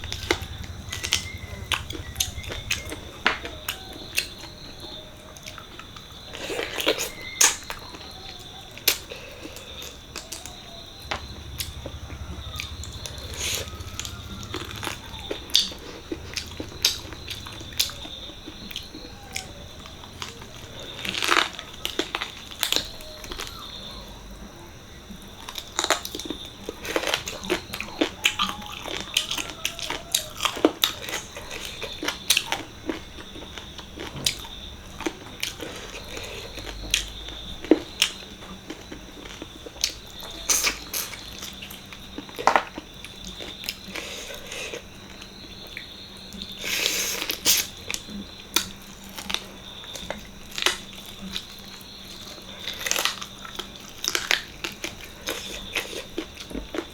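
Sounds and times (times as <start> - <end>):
wet chewing: 0.0 - 56.9
lip smacks: 25.5 - 44.8.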